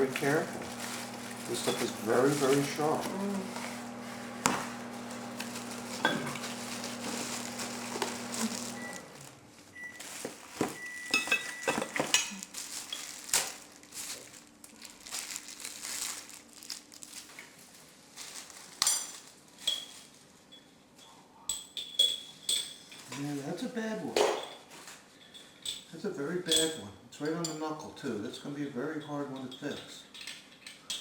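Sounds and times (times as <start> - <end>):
paper rustling: 0.0 - 20.1
metal parts clinking: 21.5 - 23.2, 29.5 - 31.0.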